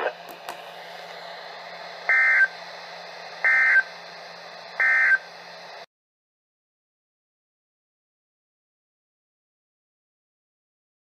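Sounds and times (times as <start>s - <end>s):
low hum: 0.0s - 5.9s
radio hiss: 0.0s - 5.9s
buzzy digital data bursts: 3.4s - 4.1s, 4.7s - 5.3s.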